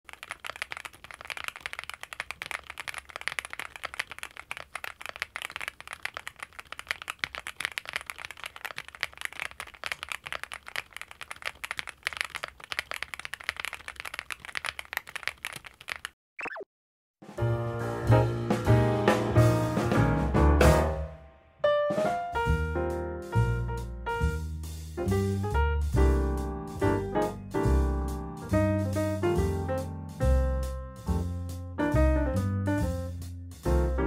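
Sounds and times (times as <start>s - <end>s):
mechanical keyboard typing: 0.1s - 16.2s.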